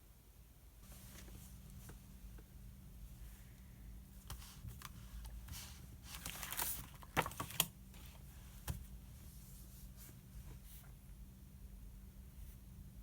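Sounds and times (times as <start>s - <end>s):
paper rustling: 4.3s - 8.8s.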